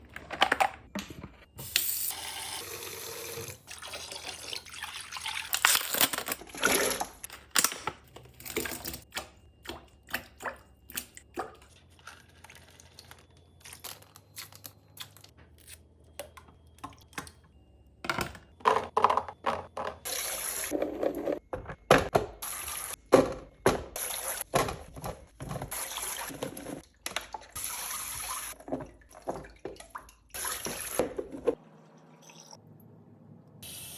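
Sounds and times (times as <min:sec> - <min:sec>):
containers clicking and knocking: 0:18.1 - 0:20.1
water running: 0:19.7 - 0:20.8, 0:22.4 - 0:23.0, 0:25.4 - 0:32.6.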